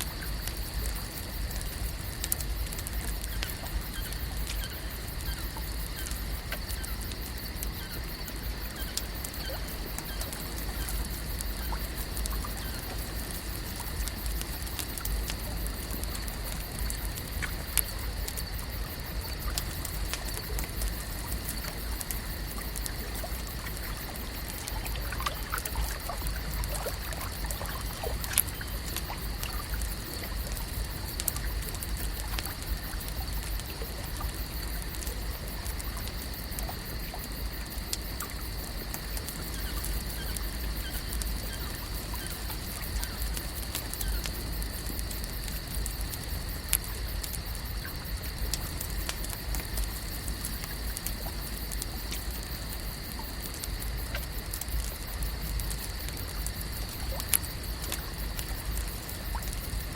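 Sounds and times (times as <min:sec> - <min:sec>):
small sharp ticks: 0:00.0 - 0:59.9
water trickling and lapping: 0:00.0 - 0:59.9.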